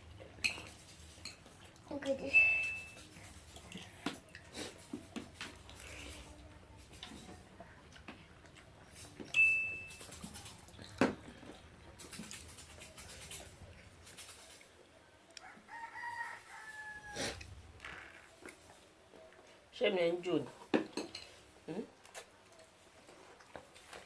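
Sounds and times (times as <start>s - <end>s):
rooster crowing: 15.4s - 17.4s.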